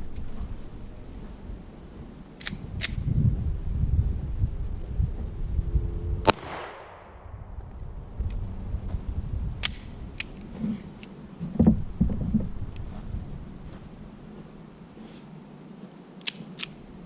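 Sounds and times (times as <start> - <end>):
handgun shot with echo: 6.2 - 7.2.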